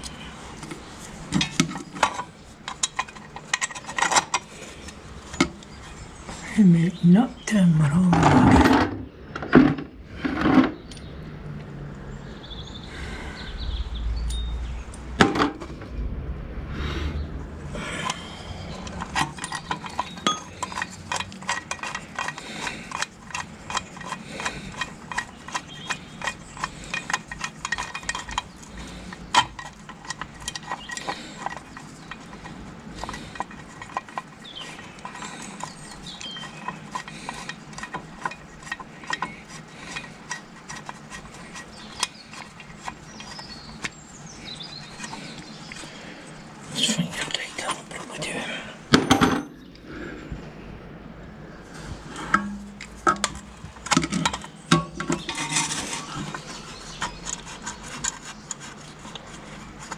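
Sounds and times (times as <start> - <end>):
low rumbling handling noise: 7.8 - 47.5, 48.5 - 59.9
metal brake parts clinking: 18.8 - 43.9, 52.1 - 56.4.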